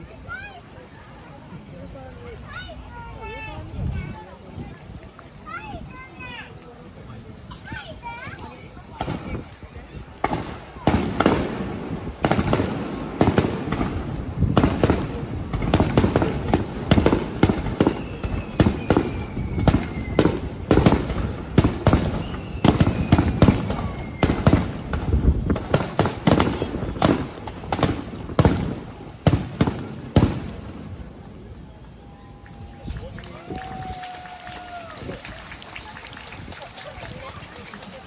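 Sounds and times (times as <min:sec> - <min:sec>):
fireworks bangs: 0:00.0 - 0:38.0
faint falling whistles: 0:17.9 - 0:20.6, 0:22.0 - 0:24.4, 0:31.9 - 0:38.0.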